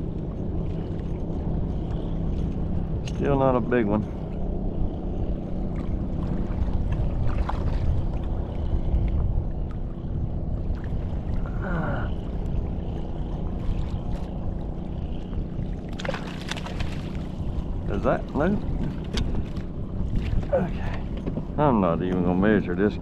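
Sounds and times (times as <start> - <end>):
water lapping against hull: 0.0 - 23.0
wind buffeting microphone: 0.0 - 23.0.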